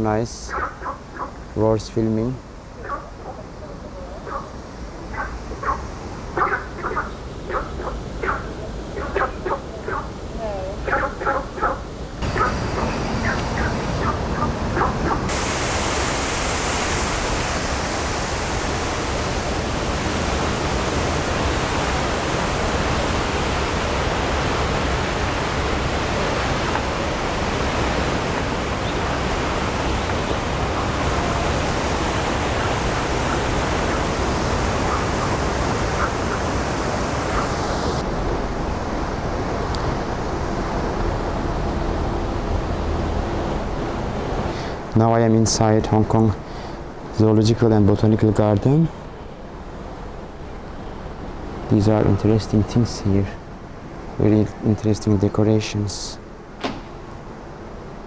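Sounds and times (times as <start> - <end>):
waterfall rushing: 12.2 - 45.6
hiss of spray: 15.1 - 20.8.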